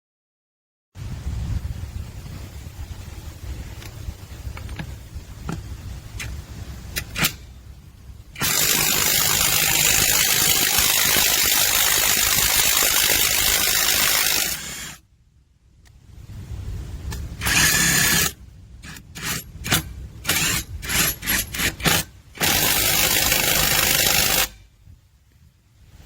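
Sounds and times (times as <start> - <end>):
low rumble: 1.0 - 8.6, 14.4 - 18.9
impact wrench running: 8.4 - 15.0, 17.4 - 24.6.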